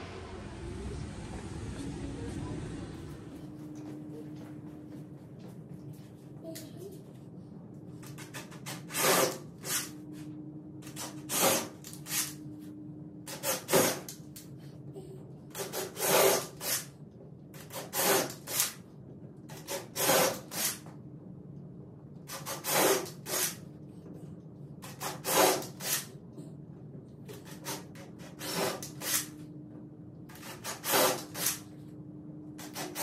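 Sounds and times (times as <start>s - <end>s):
faint steady hum: 0.0s - 33.0s
hand tool scraping: 8.2s - 9.9s, 11.0s - 12.3s, 15.6s - 16.9s, 19.6s - 20.8s, 22.3s - 23.6s, 24.8s - 26.0s, 27.4s - 29.3s, 30.4s - 31.6s.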